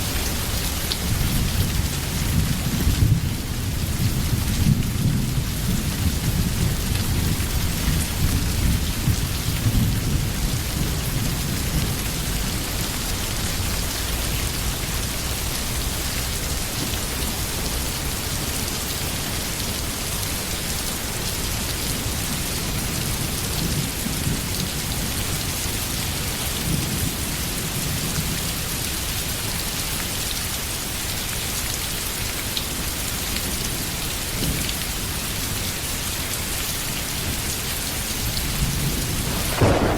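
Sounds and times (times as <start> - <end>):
steady rain falling: 0.0 - 39.9
low rolling thunder: 38.4 - 39.9.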